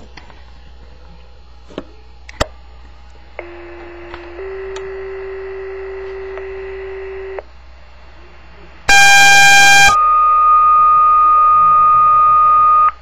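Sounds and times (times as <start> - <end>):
two-tone paging tones: 8.9 - 10.0.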